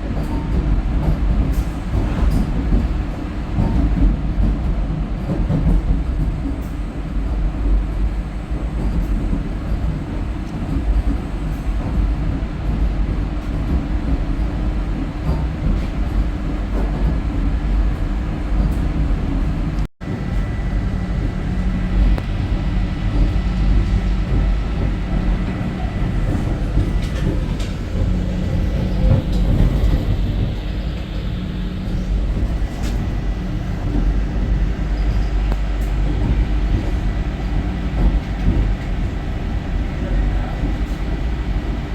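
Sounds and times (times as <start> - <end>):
train wheels rumbling on track: 0.0 - 41.9.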